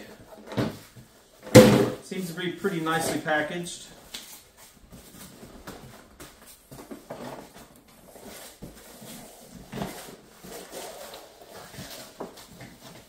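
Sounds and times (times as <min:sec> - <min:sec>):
cardboard and plastic packaging handled: 0:04.2 - 0:13.0.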